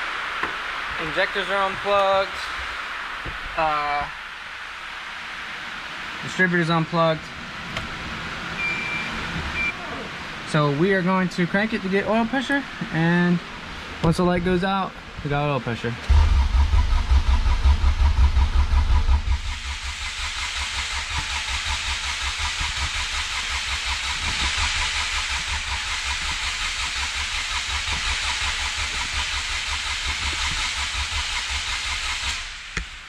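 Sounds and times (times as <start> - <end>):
hiss: 0.0 - 7.0, 16.1 - 33.0
engine cranking on starter: 16.1 - 32.6.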